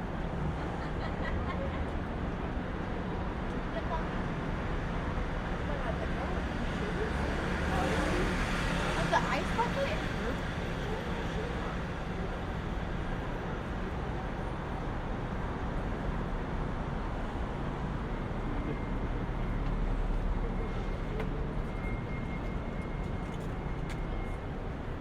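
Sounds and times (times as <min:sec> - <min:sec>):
rumble of traffic: 0:00.0 - 0:25.0.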